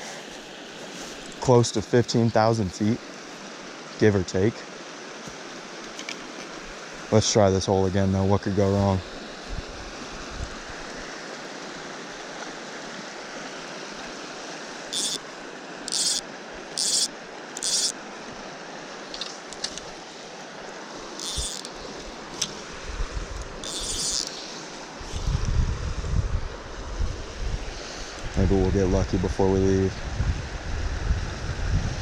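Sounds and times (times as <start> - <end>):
mountain stream rushing: 0.0 - 25.3
wind buffeting microphone: 22.6 - 23.6, 25.0 - 32.0.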